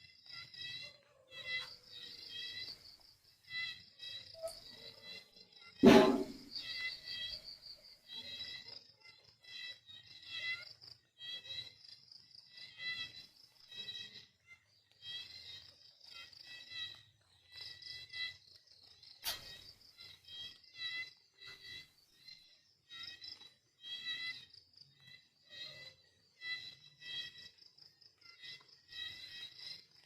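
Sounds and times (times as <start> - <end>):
crickets chirping: 0.0 - 30.0
sharp click: 19.2 - 19.6.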